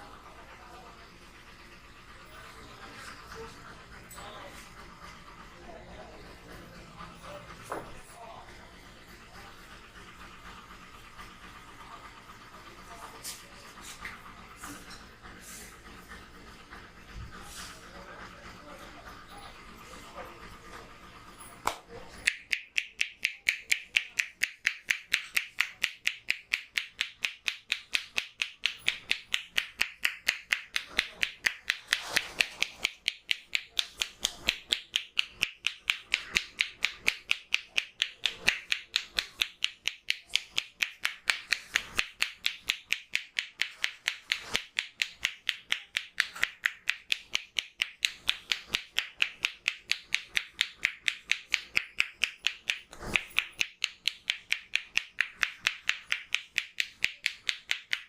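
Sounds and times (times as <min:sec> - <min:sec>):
hands tapping and slapping head: 0:21.6 - 0:58.0.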